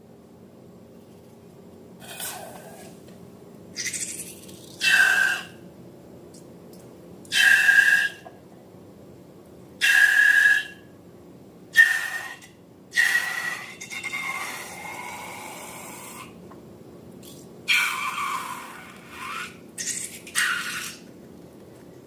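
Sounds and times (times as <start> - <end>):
air hissing from balloon with squeal: 18.6 - 21.0.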